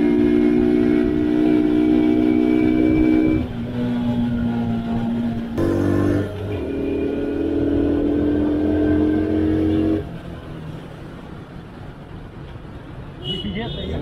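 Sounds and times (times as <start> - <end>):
motorcycle engine: 0.0 - 10.5
road traffic noise: 0.0 - 14.0.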